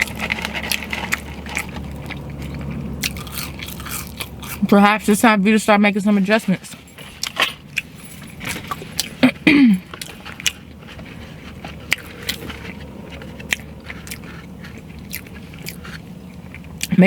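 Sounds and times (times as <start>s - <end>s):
biting and chewing food: 0.0s - 5.2s, 6.2s - 17.0s.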